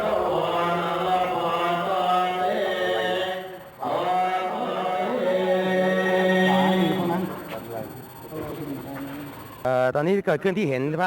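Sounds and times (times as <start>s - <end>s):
men chanting in unison: 0.0s - 7.5s.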